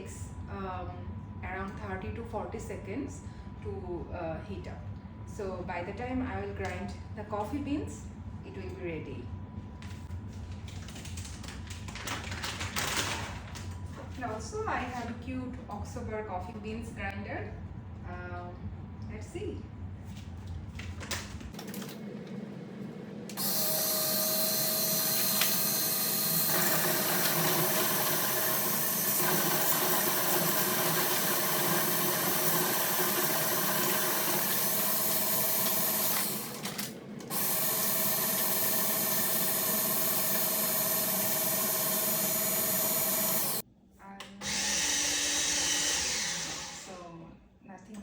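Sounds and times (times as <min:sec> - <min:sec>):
electric coffee grinder grinding: 0:23.3 - 0:43.6.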